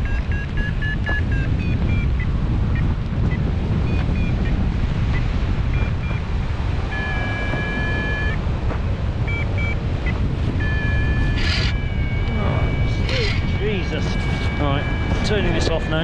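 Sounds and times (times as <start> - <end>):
long electronic beep: 0.0 - 2.3, 6.9 - 8.4, 9.2 - 16.0
short electronic beeps: 0.0 - 6.2, 6.9 - 8.4, 9.2 - 16.0
wind rushing over microphone: 0.0 - 16.0.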